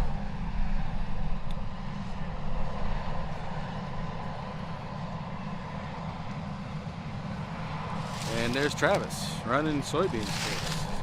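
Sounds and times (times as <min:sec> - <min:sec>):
combine harvester rumbling: 0:06.5 - 0:11.0.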